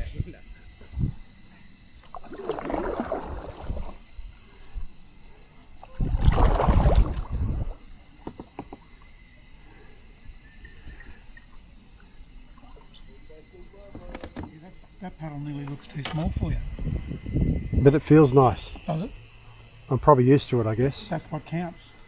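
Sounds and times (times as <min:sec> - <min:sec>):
high buzz of insects: 0:00.0 - 0:22.0
kayak paddle splashing: 0:02.0 - 0:04.1, 0:05.8 - 0:08.8
small knocks: 0:08.2 - 0:08.8, 0:13.9 - 0:14.6.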